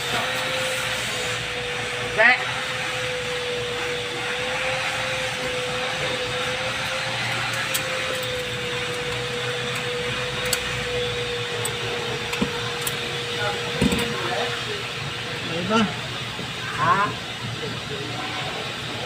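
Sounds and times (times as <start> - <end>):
hiss: 0.0 - 8.2.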